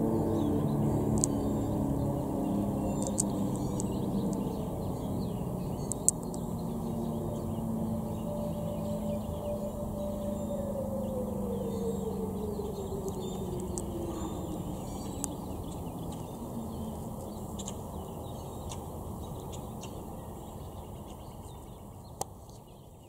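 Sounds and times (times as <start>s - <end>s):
warning siren winding down: 0.0s - 18.0s
low rumbling background: 0.0s - 23.0s.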